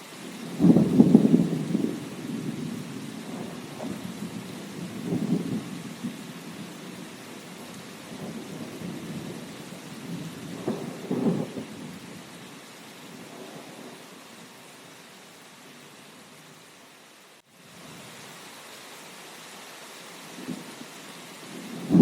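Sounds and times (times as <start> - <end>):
steady rain hiss: 0.0 - 22.0
rolling thunder: 0.5 - 6.8, 8.1 - 12.2, 21.4 - 22.0.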